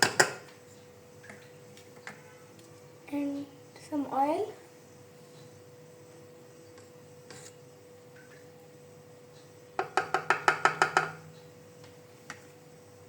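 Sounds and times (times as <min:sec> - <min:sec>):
utensil tapping mixing bowl: 0:09.8 - 0:11.2.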